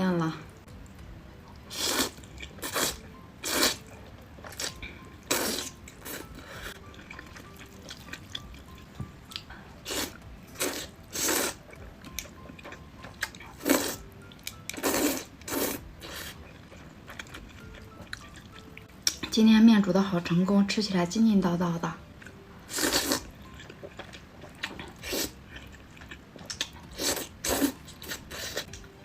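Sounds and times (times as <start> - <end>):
faint background music: 0.0 - 29.0
slurping noodles: 1.7 - 3.8, 5.3 - 6.2, 9.9 - 11.6, 22.7 - 23.3.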